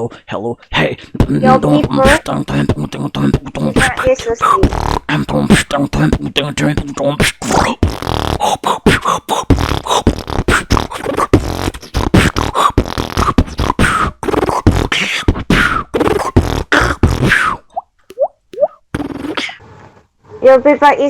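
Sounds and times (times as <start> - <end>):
beatboxing: 0.7 - 19.6.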